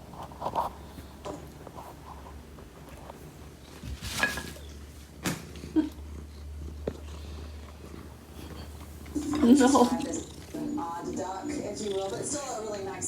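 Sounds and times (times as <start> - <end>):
cat purring: 5.6 - 13.0.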